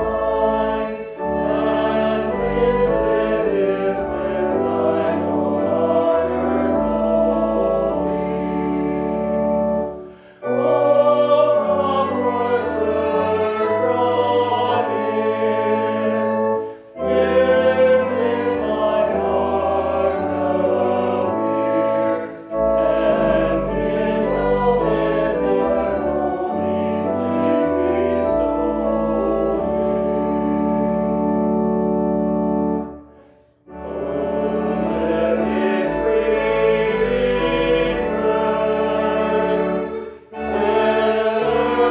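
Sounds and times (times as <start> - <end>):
choir singing a hymn: 0.0 - 33.0, 33.7 - 41.9
organ accompaniment: 0.0 - 41.9
breaths between phrases: 10.1 - 10.4.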